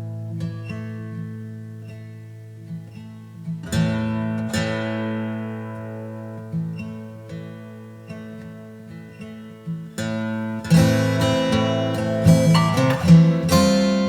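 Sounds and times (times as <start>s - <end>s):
acoustic guitar music: 0.0s - 14.0s.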